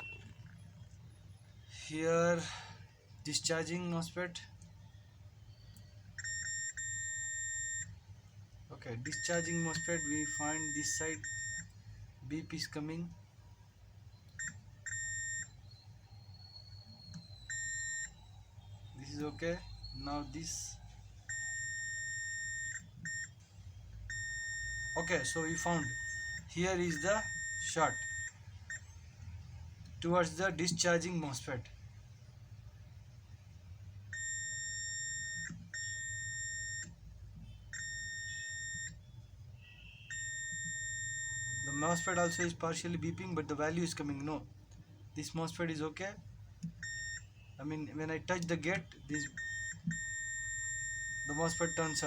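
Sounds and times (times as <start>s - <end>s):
multimeter beeping: 0.0s - 0.6s, 5.5s - 8.0s, 9.0s - 11.7s, 14.1s - 23.4s, 24.1s - 28.9s, 34.1s - 39.0s, 39.7s - 43.0s, 46.7s - 52.0s.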